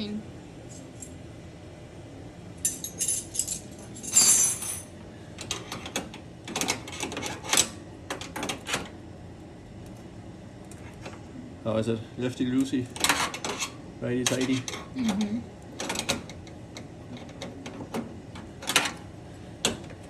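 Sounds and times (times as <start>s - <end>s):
metal wrenches clinking: 2.7s - 4.9s.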